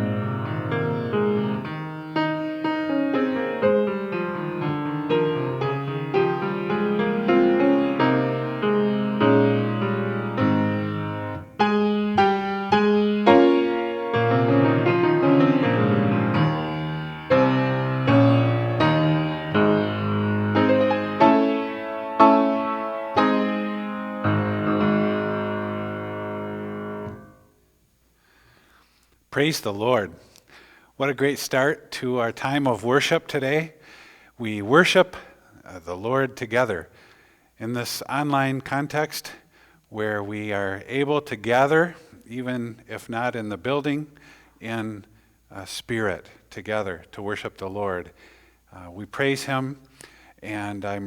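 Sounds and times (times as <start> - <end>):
solo piano chords: 0.0 - 27.6.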